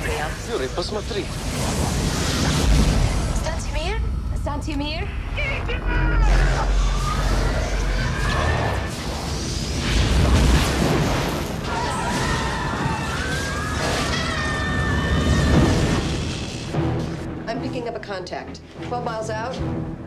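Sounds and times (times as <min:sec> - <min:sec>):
deep rumble: 0:00.0 - 0:11.1.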